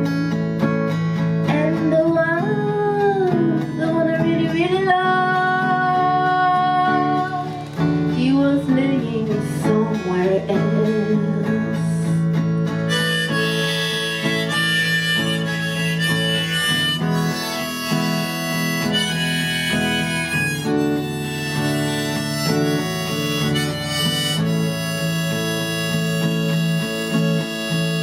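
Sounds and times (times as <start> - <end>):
strummed acoustic guitar: 0.0 - 28.0
harmonica melody: 12.6 - 28.0.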